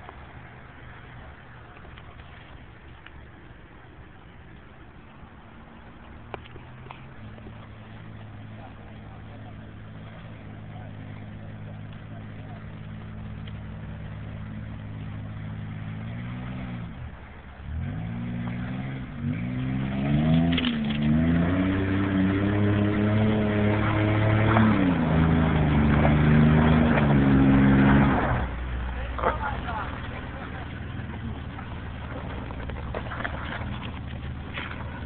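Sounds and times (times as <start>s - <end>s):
truck engine revving: 6.8s - 35.0s.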